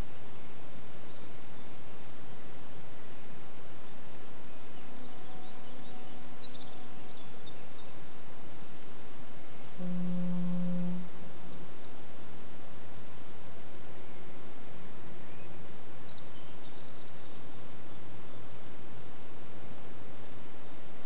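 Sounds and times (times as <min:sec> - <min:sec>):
steady outdoor hiss: 0:00.0 - 0:21.0
bird chirps: 0:04.4 - 0:08.5, 0:09.8 - 0:12.0, 0:15.3 - 0:19.8.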